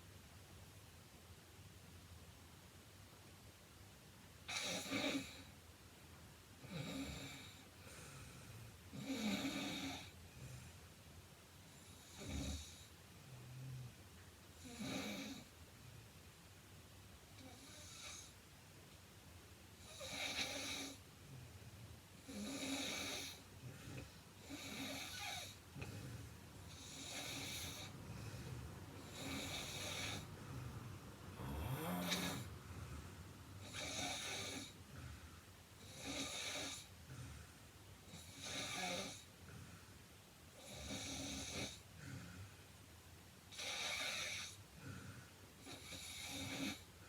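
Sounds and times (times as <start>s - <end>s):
woman snoring: 8.9s - 10.2s, 19.8s - 21.0s, 22.2s - 23.4s, 24.0s - 25.6s, 26.7s - 34.9s, 35.8s - 36.9s, 38.0s - 39.3s, 40.6s - 41.8s, 45.6s - 46.9s.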